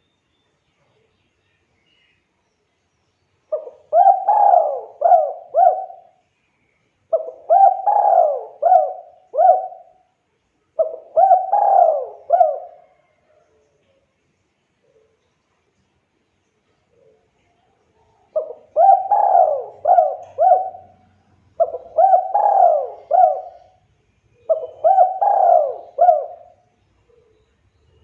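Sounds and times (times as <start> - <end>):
dove cooing: 3.5 - 6.2, 7.1 - 10.0, 10.8 - 13.4, 18.3 - 23.8, 24.4 - 27.4.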